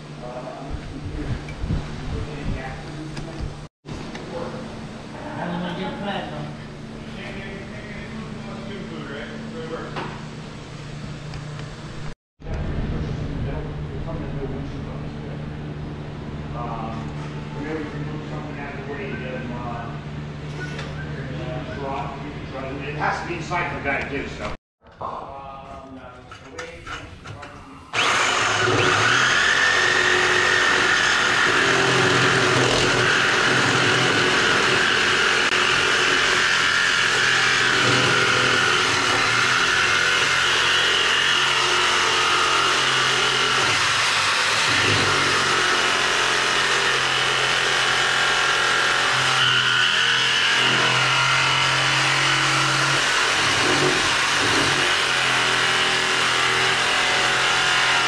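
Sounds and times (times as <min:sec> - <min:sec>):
power cutting tool cutting pipe: 0:28.0 - 0:58.0.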